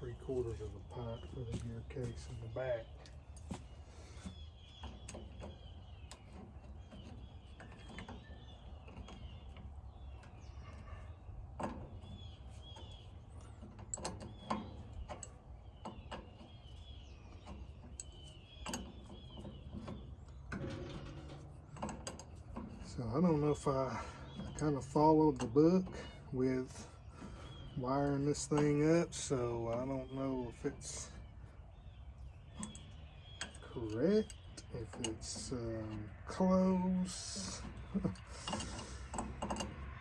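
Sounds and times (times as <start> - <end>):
birds chirping faintly: 0.0 - 40.0
steady low hum: 0.0 - 40.0
clicks and knocks of hand tools: 32.6 - 40.0.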